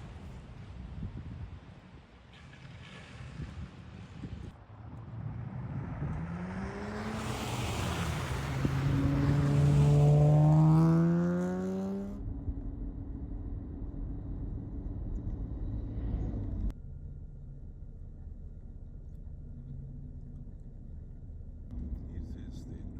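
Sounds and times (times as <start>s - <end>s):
road and tyre noise: 0.0s - 16.8s, 18.4s - 22.9s
vehicle engine accelerating: 4.6s - 16.7s
steady low rumble: 12.1s - 22.9s.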